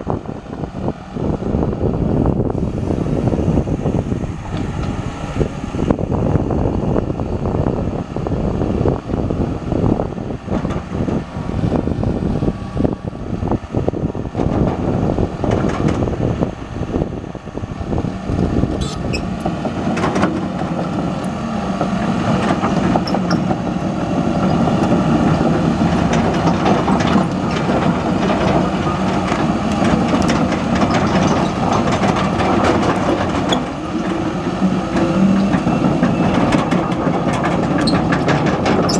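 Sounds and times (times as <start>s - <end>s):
excavator diesel engine running: 0.0s - 38.9s
knocks and rattles: 34.9s - 38.9s.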